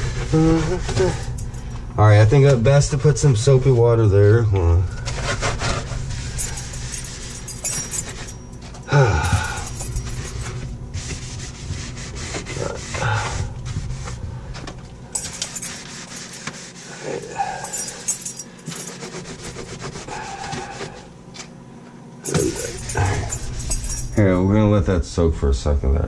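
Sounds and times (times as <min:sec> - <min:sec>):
scrubbing with soapy water: 0:10.1 - 0:14.2, 0:15.4 - 0:18.0, 0:18.8 - 0:21.0.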